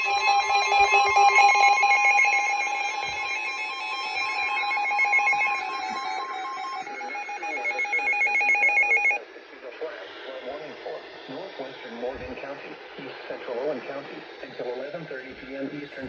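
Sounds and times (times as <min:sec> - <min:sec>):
fast warbling beep: 0:00.0 - 0:09.2
steady electronic alert tones: 0:00.0 - 0:09.2.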